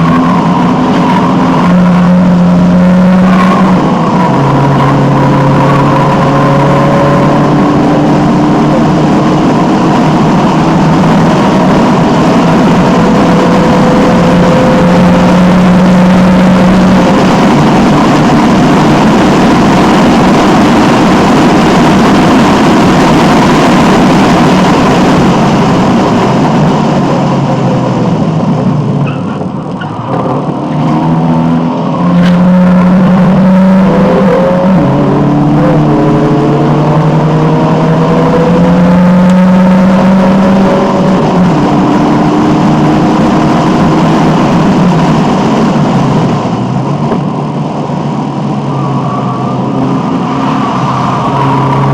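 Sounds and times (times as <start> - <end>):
car engine revving hard: 0.0 - 29.2, 30.0 - 51.9.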